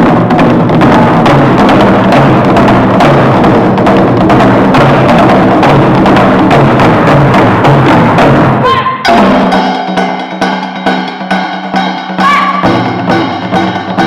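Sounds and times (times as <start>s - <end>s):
steady drumming: 0.0s - 14.0s.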